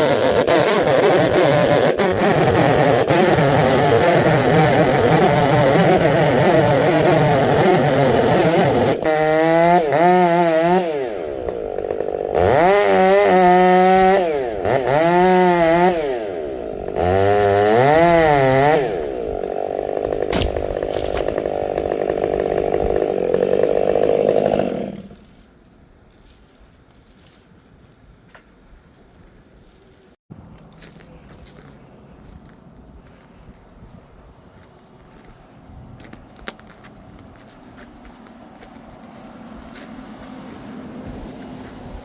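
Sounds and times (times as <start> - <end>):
chainsaw revving: 0.0 - 25.3, 38.2 - 42.0.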